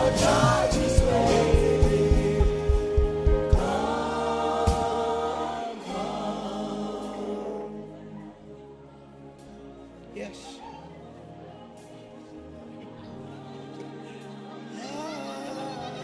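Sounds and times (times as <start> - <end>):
choir singing gospel over beat: 0.0 - 8.2.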